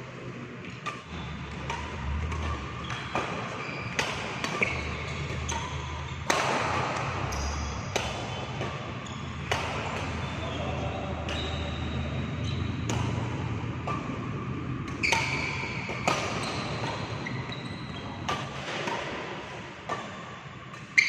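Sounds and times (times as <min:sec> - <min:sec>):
shuttlecock hit with rackets: 0:00.8 - 0:07.3.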